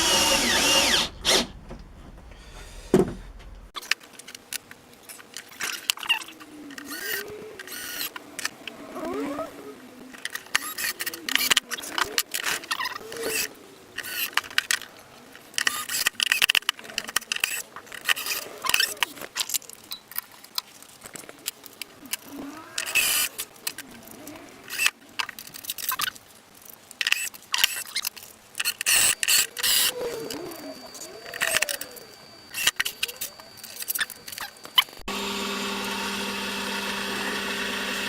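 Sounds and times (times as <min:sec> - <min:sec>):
hand tools clicking and knocking: 0:00.0 - 0:03.7
pigeon cooing: 0:06.0 - 0:14.0, 0:21.2 - 0:25.0, 0:29.0 - 0:35.0.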